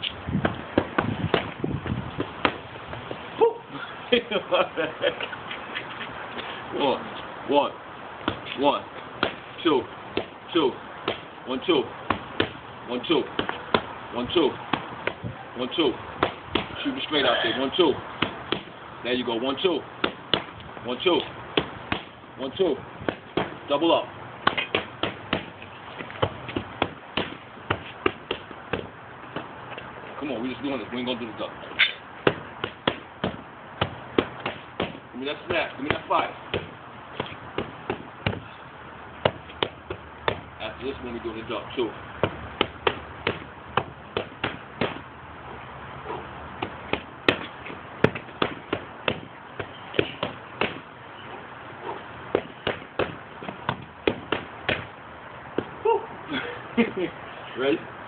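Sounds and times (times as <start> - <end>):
punches smacking pads: 0.3 - 3.2, 8.2 - 8.5, 9.2 - 9.4, 10.1 - 10.4, 11.0 - 11.3, 12.0 - 12.6, 13.3 - 15.4, 16.2 - 17.1, 18.2 - 18.8, 20.0 - 29.6, 32.2 - 38.5, 39.2 - 40.5, 42.2 - 45.1, 46.1 - 50.9, 51.9 - 55.9.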